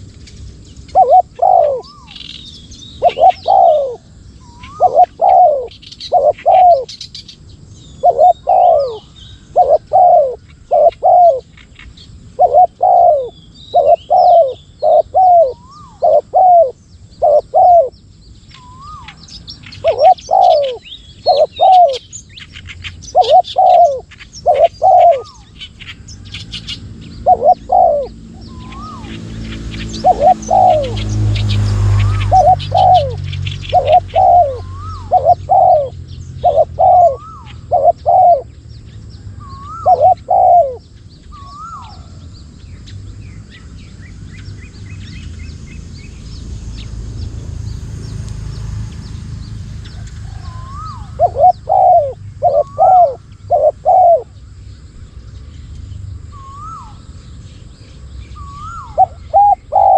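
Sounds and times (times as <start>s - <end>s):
small birds chirping: 0.0s - 59.9s
doves cooing: 0.8s - 2.3s, 3.0s - 7.0s, 8.0s - 11.8s, 12.4s - 18.0s, 18.6s - 22.0s, 22.8s - 38.6s, 39.3s - 42.2s, 49.7s - 54.4s, 58.4s - 59.9s.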